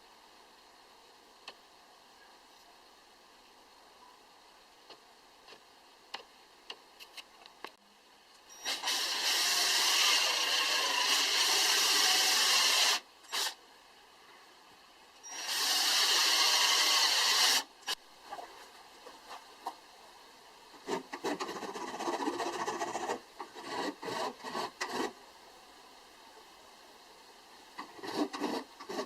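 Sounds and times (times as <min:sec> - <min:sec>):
harsh noisy tool work: 0:08.5 - 0:13.6, 0:15.2 - 0:18.0, 0:20.8 - 0:25.2, 0:27.8 - 0:29.0.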